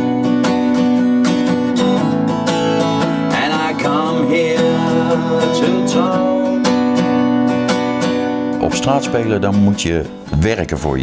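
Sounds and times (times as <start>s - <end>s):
acoustic guitar strumming: 0.0s - 11.0s.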